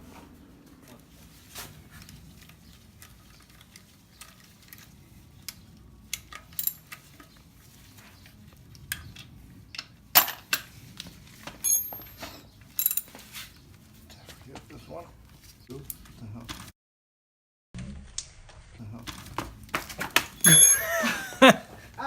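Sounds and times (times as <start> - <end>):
tools clinking against metal: 6.5 - 7.0, 11.6 - 13.2, 20.4 - 21.6
short metallic ring: 11.6 - 12.2, 20.4 - 21.3.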